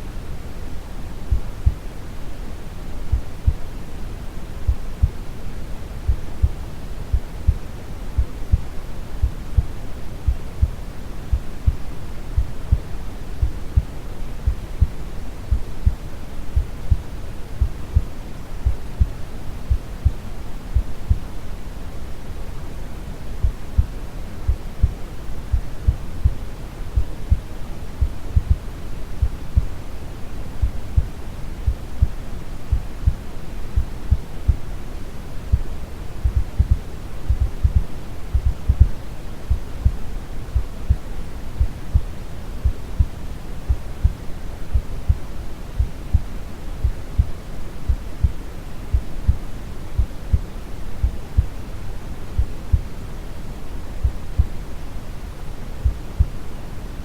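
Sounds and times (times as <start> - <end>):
brown noise hiss: 0.0 - 57.0
heartbeat thumping: 1.3 - 1.8, 3.1 - 3.6, 4.7 - 5.2, 6.1 - 11.8, 12.4 - 16.0, 16.6 - 20.2, 20.8 - 21.3, 23.4 - 26.4, 28.0 - 29.8, 30.6 - 31.1, 35.5 - 45.2, 45.8 - 49.4, 50.0 - 51.6, 52.4 - 52.9, 54.0 - 54.5, 55.8 - 56.3.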